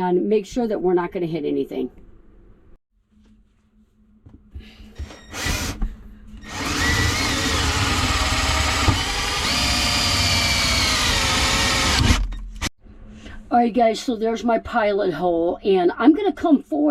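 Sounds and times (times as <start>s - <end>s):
power drill drilling metal: 5.3s - 5.8s, 6.4s - 12.3s.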